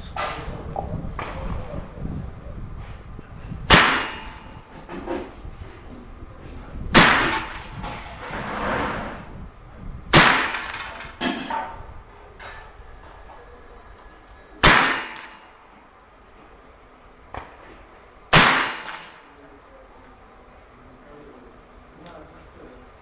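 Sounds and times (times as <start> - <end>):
rifle shots ringing: 3.7 - 5.0, 6.9 - 8.1, 10.1 - 11.5, 12.5 - 15.9, 18.3 - 19.6
faint gun cracks: 14.6 - 15.8, 18.3 - 19.5.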